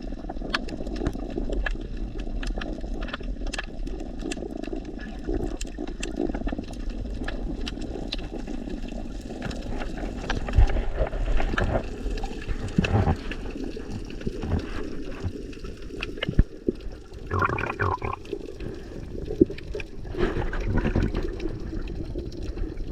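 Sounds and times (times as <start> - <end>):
underwater rush: 0.0 - 22.9
underwater clicks: 0.4 - 8.3, 12.5 - 18.3
bubbling bursts: 2.7 - 22.9.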